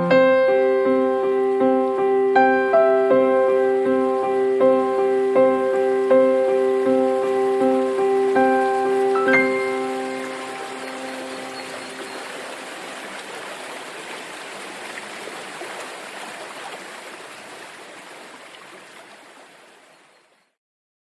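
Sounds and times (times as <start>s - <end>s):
flowing water rushing: 0.0s - 20.5s
music notes ringing: 2.8s - 12.8s.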